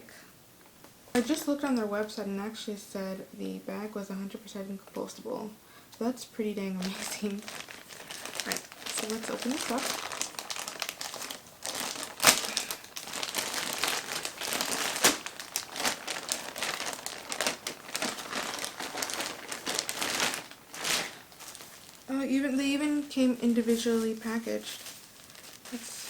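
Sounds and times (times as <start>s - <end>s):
plastic packaging crinkling: 6.8s - 26.0s.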